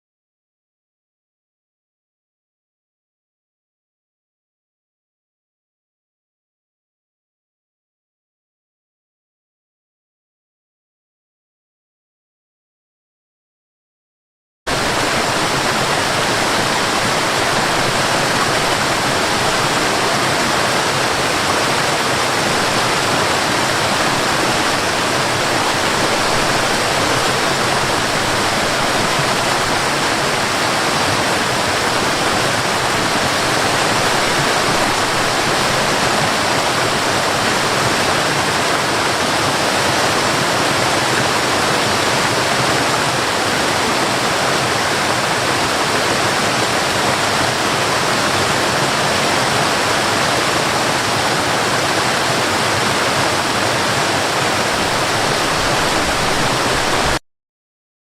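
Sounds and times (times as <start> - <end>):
waterfall rushing: 14.7 - 57.2.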